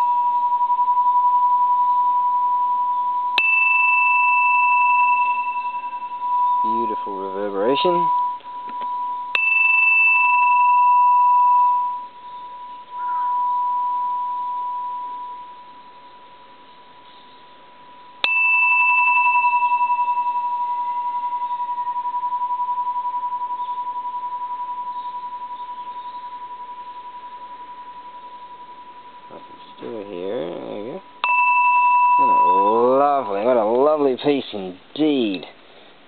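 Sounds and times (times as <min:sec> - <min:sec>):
small bell struck and ringing: 0:00.0 - 0:15.8, 0:18.2 - 0:34.0.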